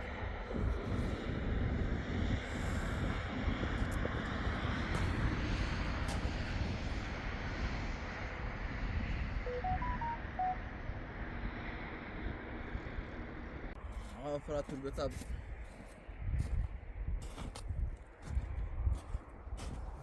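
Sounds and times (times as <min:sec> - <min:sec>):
steady outdoor rushing noise: 0:00.0 - 0:08.8
short electronic beeps: 0:09.5 - 0:10.7.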